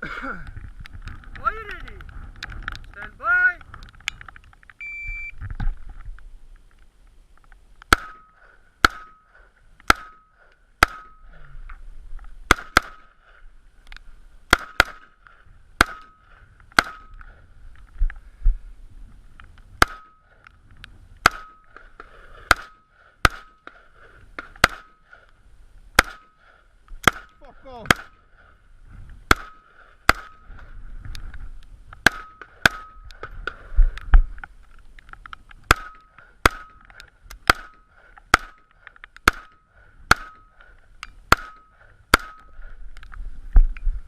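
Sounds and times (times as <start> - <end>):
brief ringing tone: 4.8 - 5.4
electronic timer beep: 4.8 - 5.4
gunshots: 7.9 - 11.4, 12.5 - 13.2, 14.5 - 15.2, 15.8 - 17.2, 21.2 - 25.2, 26.0 - 28.3, 29.3 - 30.4, 32.0 - 33.6, 35.6 - 40.5.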